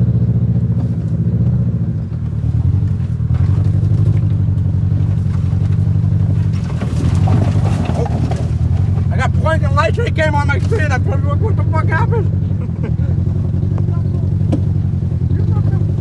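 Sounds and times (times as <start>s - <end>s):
car engine running: 0.0s - 16.0s
faint knocks and rattles: 13.2s - 16.0s.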